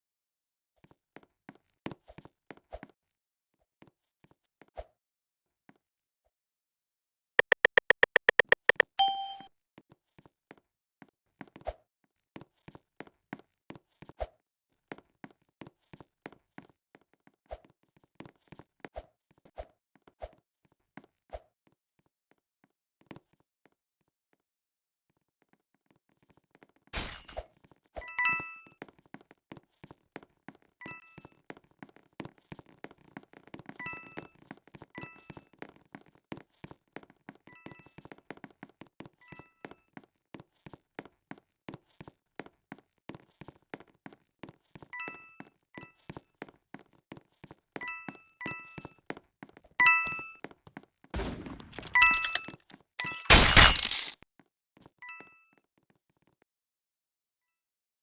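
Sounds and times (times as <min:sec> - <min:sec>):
cluster of high tones: 0:07.4 - 0:09.5.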